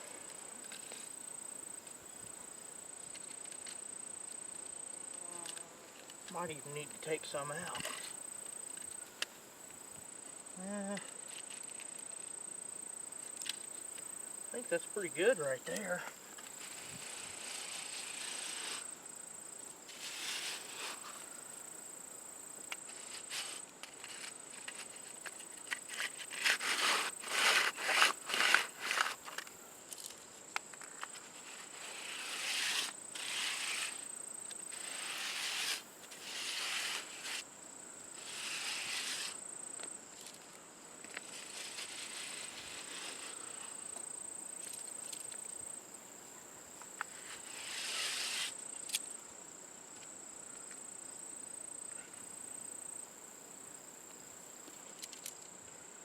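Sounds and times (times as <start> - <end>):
high insect trill: 0.0 - 56.0
tool scraping wet concrete: 14.6 - 19.0, 19.9 - 21.2, 22.9 - 29.4, 31.2 - 34.1, 34.7 - 37.4, 38.2 - 39.4, 41.2 - 43.7, 47.3 - 48.6.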